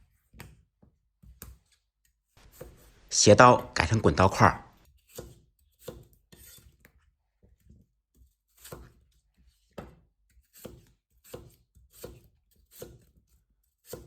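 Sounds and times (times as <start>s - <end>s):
knife cutting potato: 1.2s - 3.1s, 4.8s - 7.1s, 8.2s - 9.1s, 9.7s - 14.0s.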